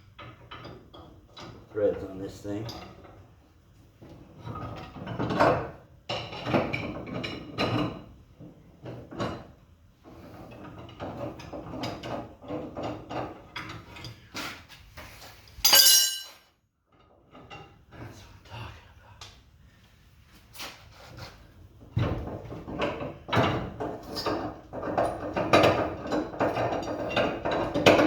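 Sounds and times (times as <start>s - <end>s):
metal tools clicking and scraping: 15.6s - 16.4s
loud ringing metal clang: 15.7s - 16.4s.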